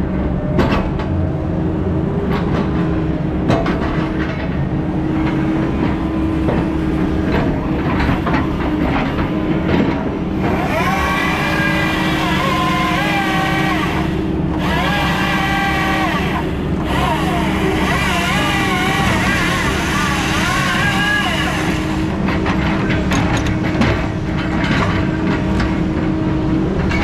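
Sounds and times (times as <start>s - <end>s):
heavy equipment engine running: 0.0s - 27.0s
knocks and clanks: 2.3s - 26.1s
wavering whine: 10.1s - 22.3s.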